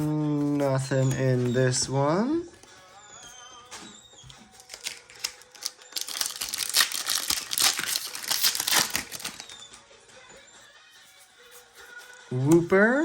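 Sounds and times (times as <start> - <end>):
foil wrapper crinkling: 4.6 - 9.8.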